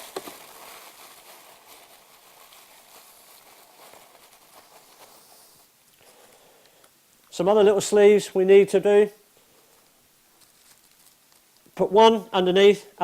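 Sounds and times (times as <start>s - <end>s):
tissue paper rustling and crinkling: 0.0s - 6.4s, 9.7s - 11.7s
small crackles: 0.0s - 7.4s, 9.5s - 11.8s.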